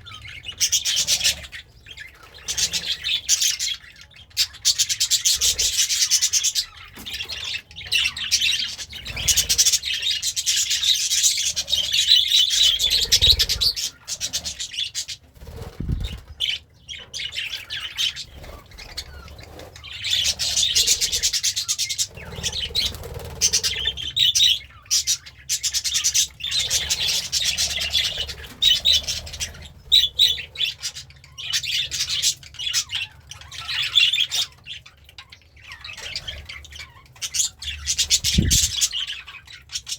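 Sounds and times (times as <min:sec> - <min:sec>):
budgerigar warbling and chattering: 0:35.6 - 0:39.9.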